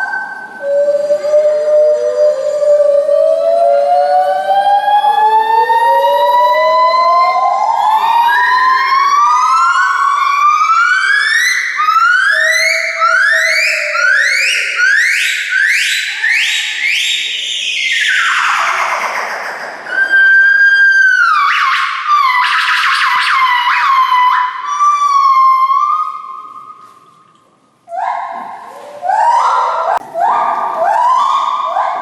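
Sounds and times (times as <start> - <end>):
monkeys whooping: 7.2 - 26.8, 27.9 - 32.0.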